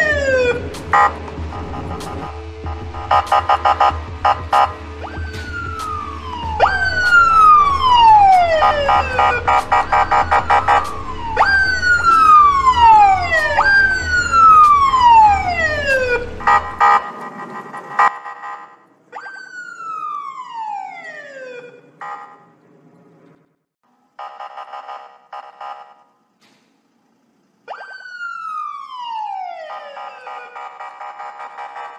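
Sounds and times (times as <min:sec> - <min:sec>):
low hum: 0:00.0 - 0:17.9
electronic police siren: 0:00.0 - 0:22.4, 0:24.2 - 0:26.2, 0:27.6 - 0:31.9.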